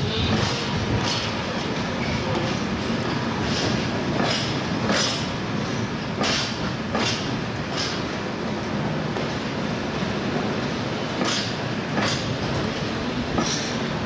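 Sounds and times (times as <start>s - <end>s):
train wheels rumbling on rails: 0.0s - 14.0s
wheels clacking over rail joints: 0.1s - 9.5s, 10.3s - 14.0s.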